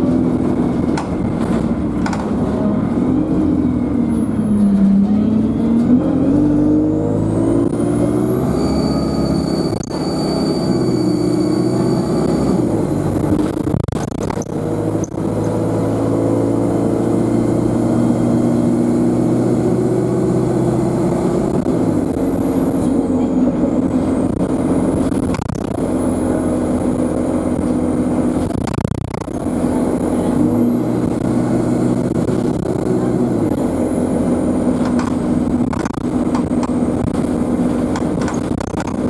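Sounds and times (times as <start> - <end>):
bus diesel engine running: 0.0 - 39.0
high turbo whine: 0.0 - 39.0
knocks and rattles: 0.4 - 2.7, 34.8 - 37.2, 37.9 - 39.0.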